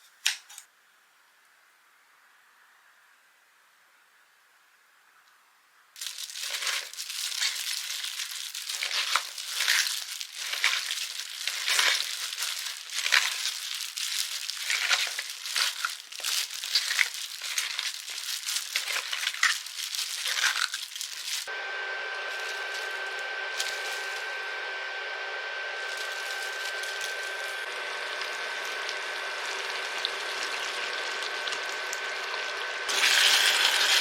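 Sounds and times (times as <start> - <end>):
crinkling and crackling: 6.0 - 21.5, 22.1 - 24.5, 25.8 - 34.0
hum with high whine: 21.5 - 34.0.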